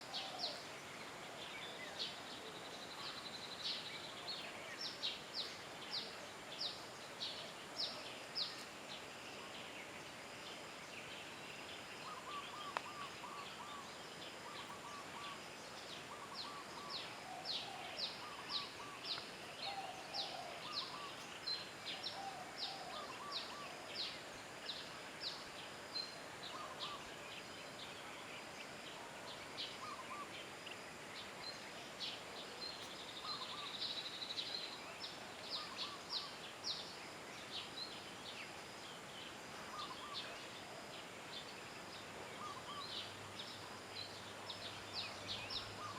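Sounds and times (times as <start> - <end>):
background hiss: 0.0 - 45.9
birds calling: 10.8 - 24.2.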